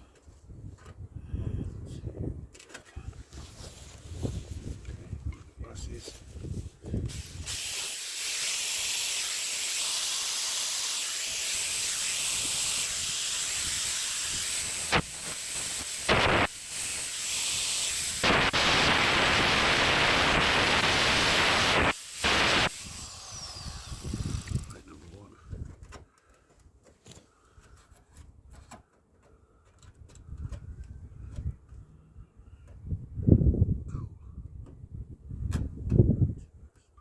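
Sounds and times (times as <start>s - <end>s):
angle grinder grinding steel: 7.1s - 24.8s.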